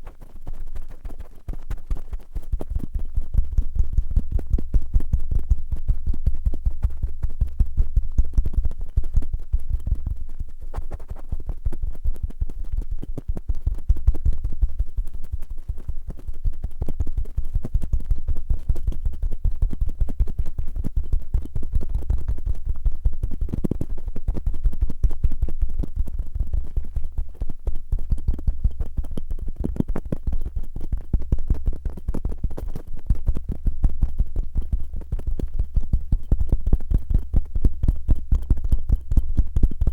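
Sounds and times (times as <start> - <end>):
cotton swabs scratching microphone: 9.0 - 13.3.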